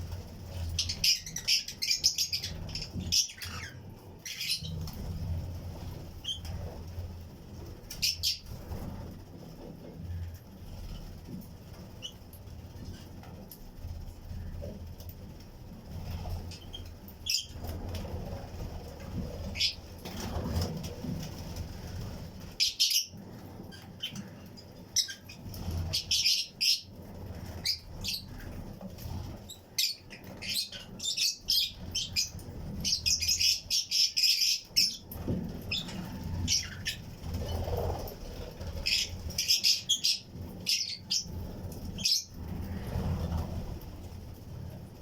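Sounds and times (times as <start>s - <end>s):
wings flapping: 0.0s - 45.0s
lovebirds chirping: 0.5s - 5.2s, 29.3s - 42.8s.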